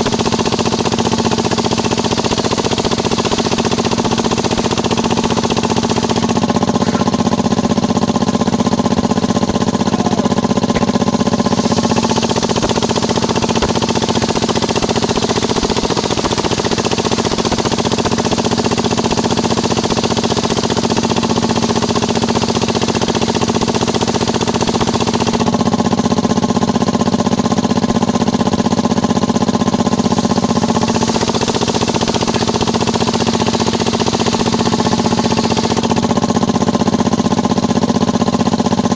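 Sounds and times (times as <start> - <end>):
circular saw ripping timber: 10.4 - 25.4, 29.9 - 36.1.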